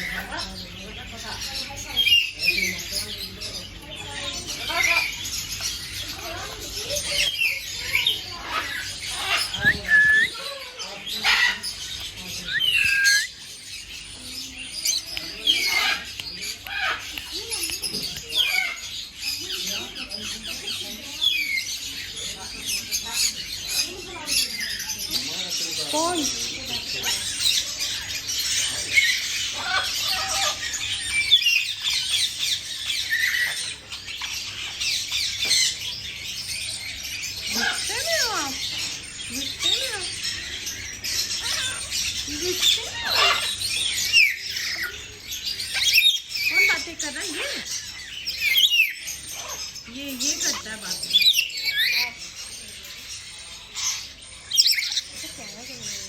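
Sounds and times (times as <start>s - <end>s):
birds chirping and squawking: 0.0s - 56.0s
bird squawks: 6.6s - 13.5s.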